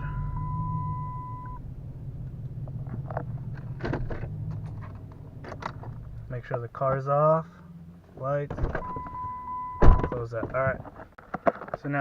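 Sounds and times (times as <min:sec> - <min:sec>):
seatbelt reminder tone: 0:00.0 - 0:01.6, 0:08.8 - 0:09.9
car engine rumble: 0:00.0 - 0:11.7.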